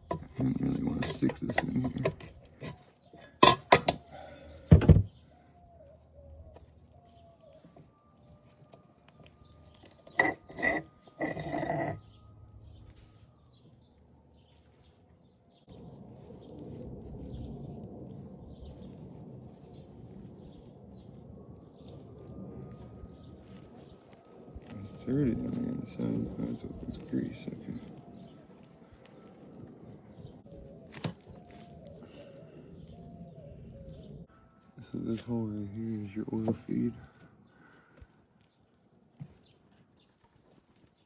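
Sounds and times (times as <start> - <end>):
steel parts clinking and knocking: 0.0 - 4.1, 9.6 - 12.0.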